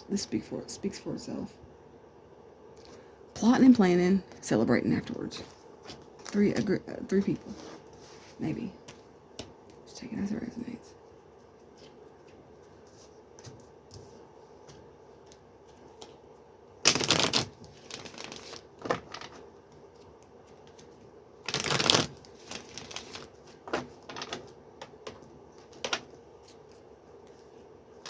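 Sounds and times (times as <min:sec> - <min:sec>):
cards being shuffled: 0:16.9 - 0:27.6.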